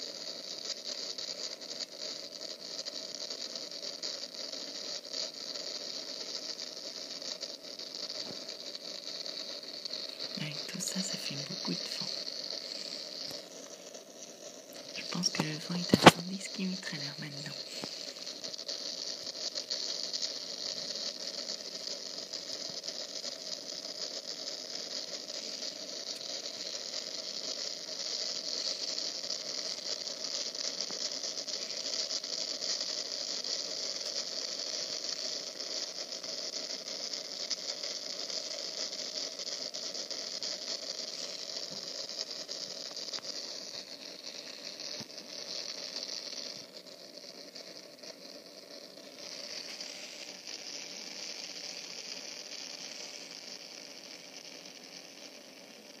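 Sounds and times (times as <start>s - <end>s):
heavy rain hissing: 0.0s - 56.0s.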